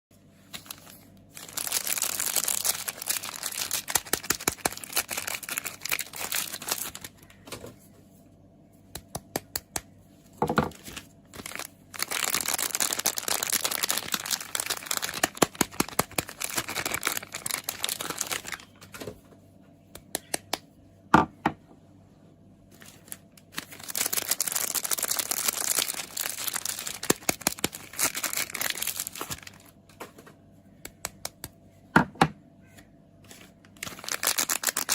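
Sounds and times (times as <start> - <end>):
packaging crinkling and tearing: 0.5 - 7.4, 10.6 - 19.0, 22.8 - 29.8, 33.2 - 34.9.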